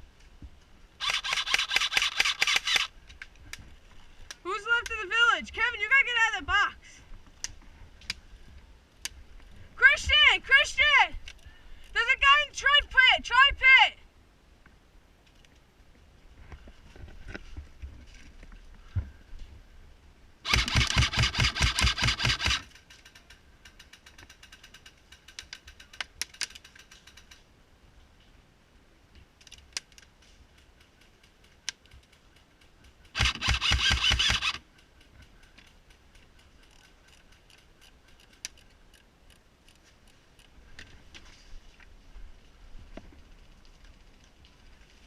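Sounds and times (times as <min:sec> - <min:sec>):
airsoft gun full-auto bursts: 0:01.0 - 0:02.9, 0:20.5 - 0:22.7, 0:33.1 - 0:34.6.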